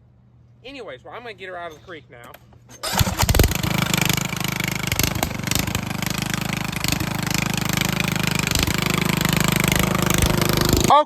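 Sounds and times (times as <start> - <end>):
riding lawnmower engine running: 2.8 - 11.0.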